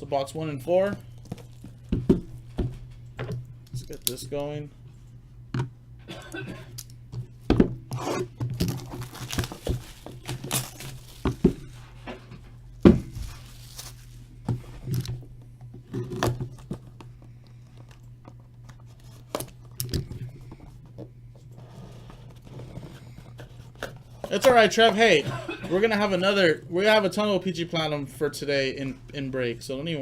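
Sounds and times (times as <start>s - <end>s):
steady low hum: 0.0s - 30.0s
plastic wrapping tearing: 8.0s - 11.8s, 13.0s - 14.3s.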